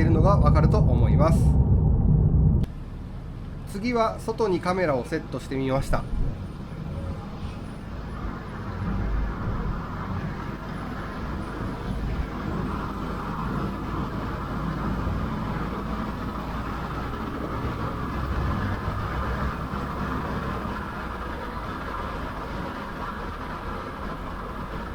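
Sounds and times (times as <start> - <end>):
low droning hum: 0.0 - 3.1
tyre and road noise: 5.8 - 24.9.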